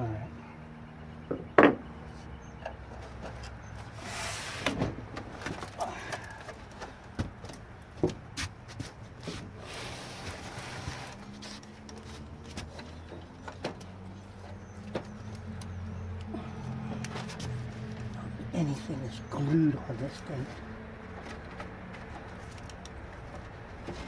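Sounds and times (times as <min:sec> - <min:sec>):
hands clicking and scraping plastic: 0:21.0 - 0:24.0.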